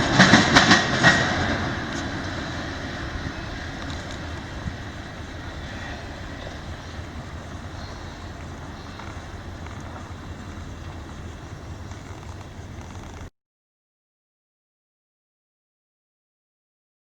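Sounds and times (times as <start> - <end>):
constant low hum: 0.0 - 13.3
freight train rumbling past: 0.0 - 13.3.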